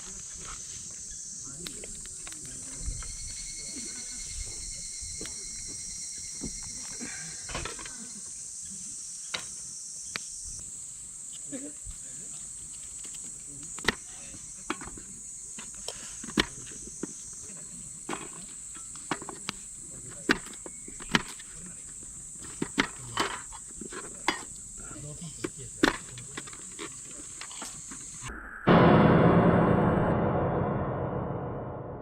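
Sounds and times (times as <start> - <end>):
insects chirring: 0.0 - 28.7.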